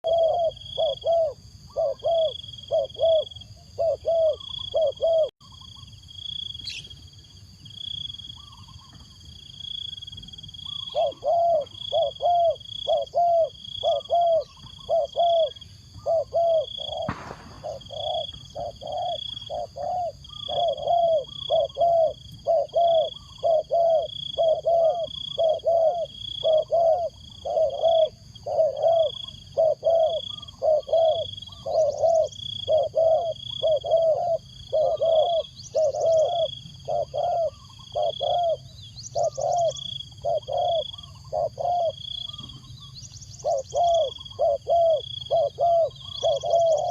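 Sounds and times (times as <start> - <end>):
dove cooing: 0.0 - 5.3, 10.6 - 46.9
insects trilling: 0.0 - 46.9
sharp click: 17.1 - 18.0.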